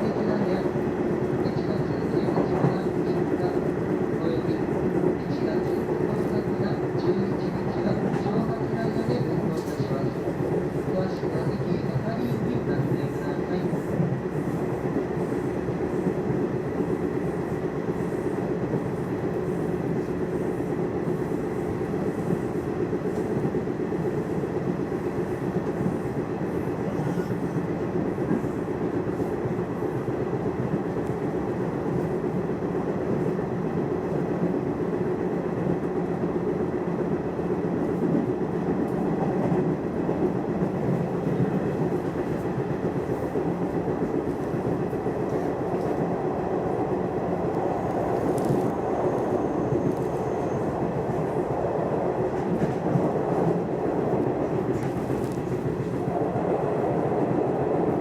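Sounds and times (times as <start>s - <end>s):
train wheels rumbling on rail: 0.0s - 58.0s.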